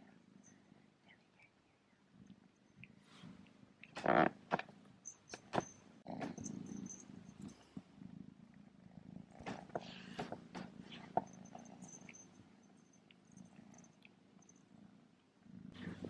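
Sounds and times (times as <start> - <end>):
collar bell jingling: 5.0 - 7.6, 10.9 - 14.6
kitten purring: 5.6 - 16.0.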